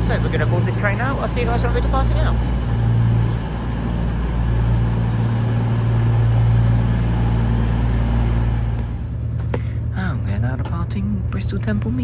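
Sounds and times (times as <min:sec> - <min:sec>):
train diesel engines humming: 0:00.0 - 0:09.6.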